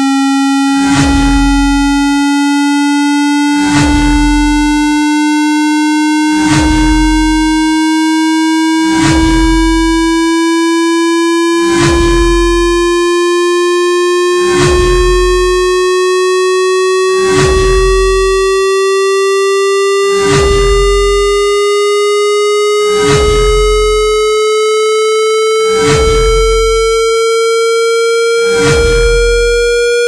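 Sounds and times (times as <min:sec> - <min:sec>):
buzzy rising test tone: 0:00.0 - 0:30.0
soft deep pulse: 0:00.8 - 0:02.3, 0:03.6 - 0:05.0, 0:06.4 - 0:07.8, 0:08.9 - 0:10.3, 0:11.7 - 0:13.0, 0:14.4 - 0:15.8, 0:17.2 - 0:18.6, 0:20.2 - 0:21.7, 0:22.9 - 0:24.6, 0:25.7 - 0:27.3, 0:28.5 - 0:30.0.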